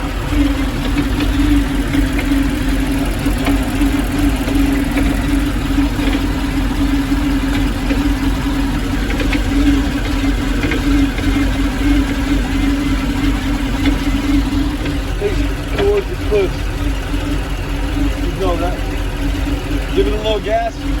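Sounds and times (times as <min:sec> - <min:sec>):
car engine idling roughly: 0:00.0 - 0:21.0.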